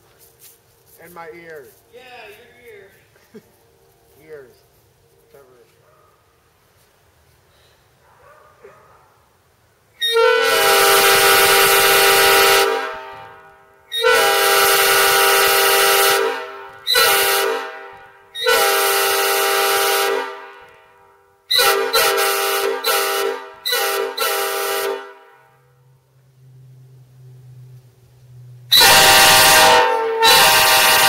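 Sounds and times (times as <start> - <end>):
train horn blasts: 10.0 - 26.0, 28.7 - 31.0.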